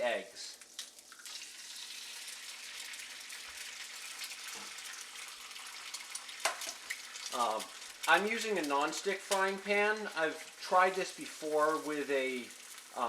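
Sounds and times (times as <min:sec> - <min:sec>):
onions sizzling in a pan: 0:00.0 - 0:13.0.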